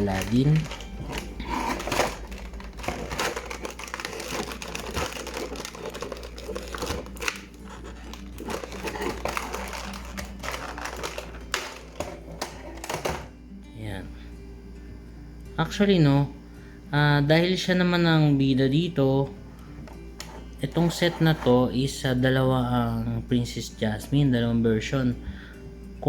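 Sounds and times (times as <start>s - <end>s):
packaging crinkling and rustling: 0.0s - 13.3s.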